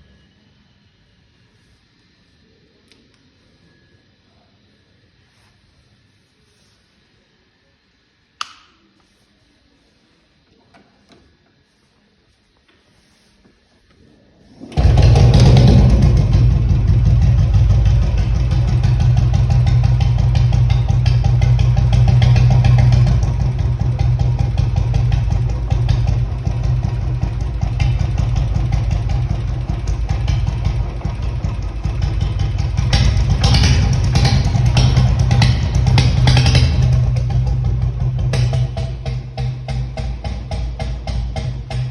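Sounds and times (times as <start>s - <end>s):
motorcycle engine thumping: 14.8s - 41.9s.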